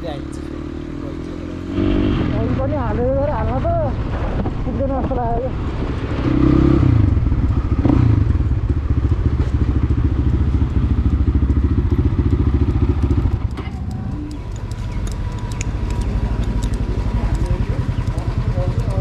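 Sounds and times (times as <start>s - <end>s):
motorcycle engine running: 0.0s - 19.0s
light clicks and clatter: 13.3s - 19.0s.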